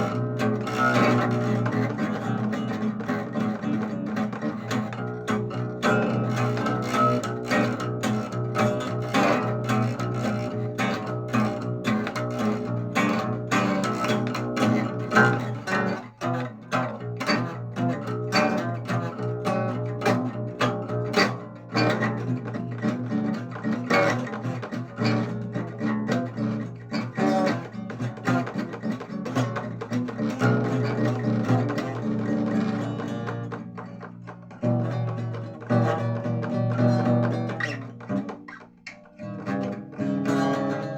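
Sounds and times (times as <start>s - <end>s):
plucked string notes: 0.0s - 40.9s.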